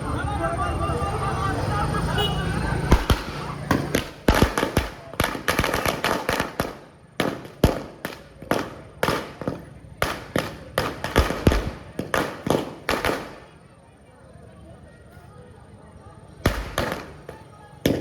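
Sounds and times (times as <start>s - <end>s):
fireworks bangs and cracks: 2.8s - 13.6s, 16.5s - 18.0s.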